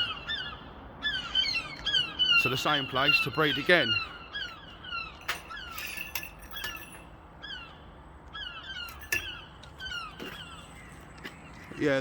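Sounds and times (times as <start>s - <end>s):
gulls calling: 0.0s - 12.0s.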